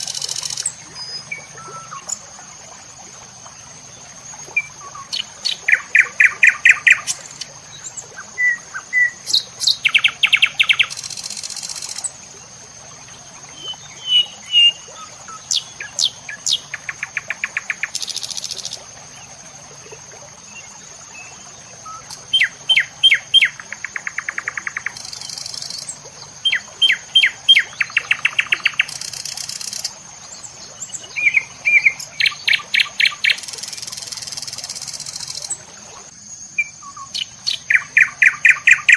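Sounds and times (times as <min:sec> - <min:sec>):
songbird singing with buzzy trill: 0:04.4 - 0:12.1, 0:13.5 - 0:18.8, 0:20.5 - 0:35.7, 0:36.6 - 0:38.9.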